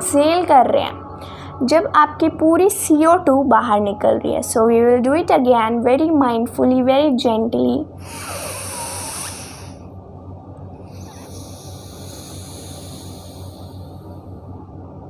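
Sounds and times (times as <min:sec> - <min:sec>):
deep breaths through nostril: 0:08.0 - 0:09.8, 0:10.8 - 0:14.2.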